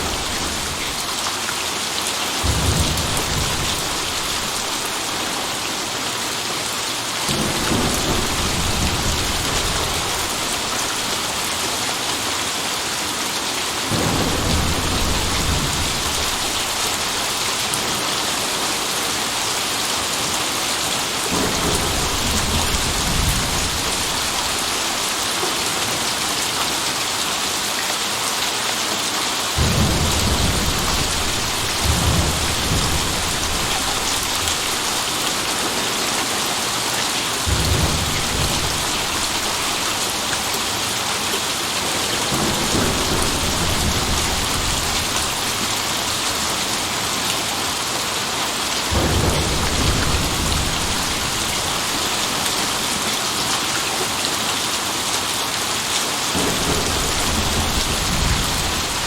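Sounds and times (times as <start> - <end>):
thunder rumbling: 0.0 - 1.1, 2.4 - 5.6, 7.3 - 11.6, 13.9 - 19.4, 21.0 - 25.0, 29.6 - 40.5, 41.9 - 46.4, 48.9 - 52.9, 56.3 - 59.0
steady rain falling: 0.0 - 59.0.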